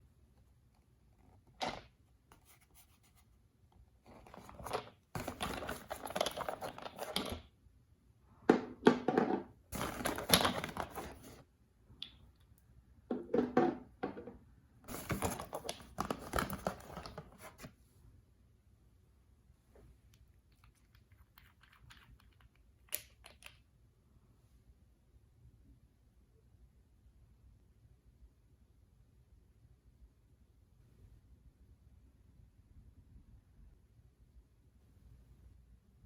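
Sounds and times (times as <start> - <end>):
plastic packaging crinkling and tearing: 9.8 - 11.3.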